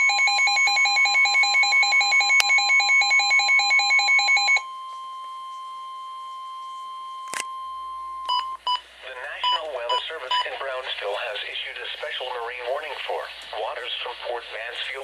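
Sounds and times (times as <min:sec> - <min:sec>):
rapid alarm beeps: 0:00.0 - 0:06.1, 0:09.4 - 0:10.5
steady warning alarm tone: 0:00.0 - 0:08.8.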